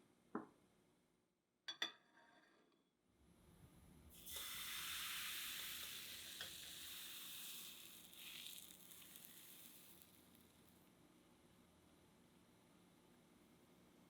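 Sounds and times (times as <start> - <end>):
crepe batter sizzling in pan: 4.1 - 11.0.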